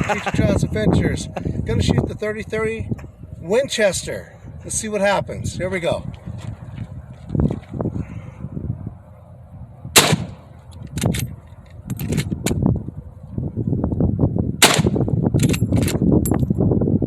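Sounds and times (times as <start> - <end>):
rifle shots: 10.0 - 10.4, 14.6 - 15.0.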